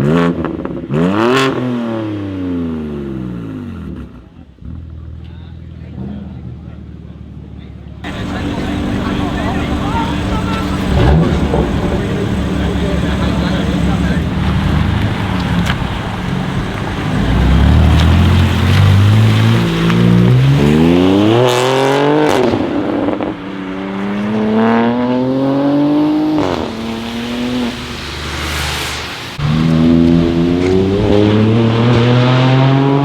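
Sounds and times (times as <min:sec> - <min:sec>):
car engine accelerating hard: 0:08.0 - 0:33.0.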